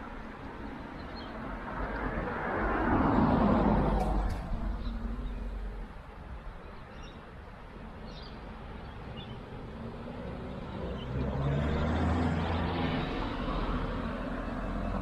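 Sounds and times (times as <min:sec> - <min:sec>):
engine hum approaching: 0:00.0 - 0:06.7, 0:07.9 - 0:15.0
vehicle passing: 0:10.0 - 0:15.0.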